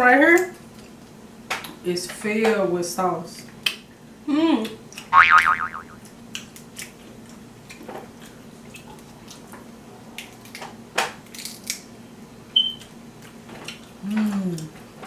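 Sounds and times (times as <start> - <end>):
crab shells cracking: 10.2 - 11.9.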